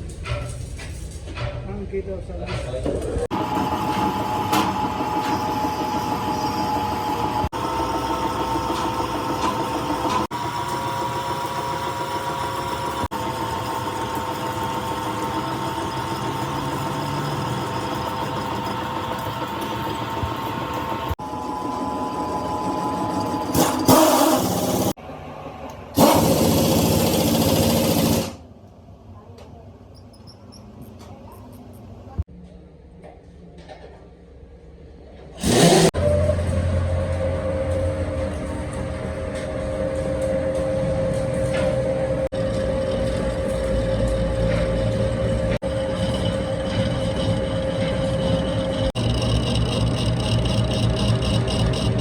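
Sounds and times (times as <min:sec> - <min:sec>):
workshop machine whining: 0:02.8 - 0:28.6, 0:35.4 - 0:52.0
machinery pulsing drone: 0:36.0 - 0:52.0.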